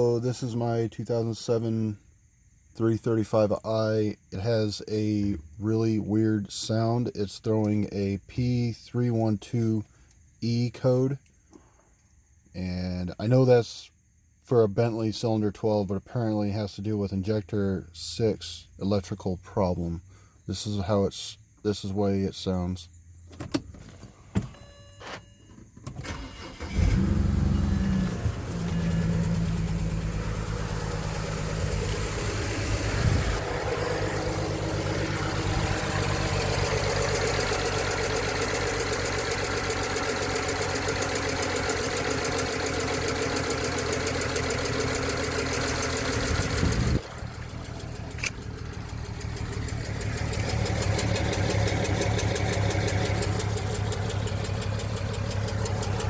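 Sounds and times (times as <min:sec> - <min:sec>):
car engine starting: 0:25.8 - 0:56.0
engine idling unevenly: 0:26.1 - 0:56.0.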